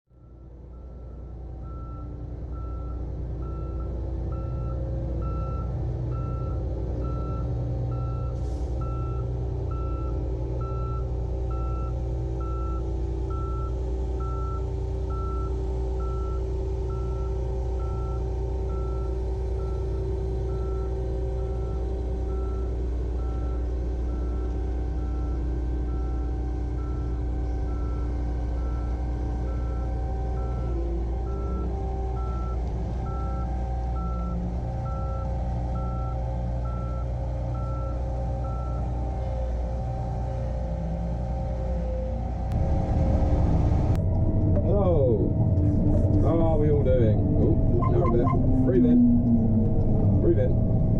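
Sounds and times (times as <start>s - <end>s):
combine harvester engine running: 0.1s - 50.9s
alarm beeping: 46.2s - 49.6s.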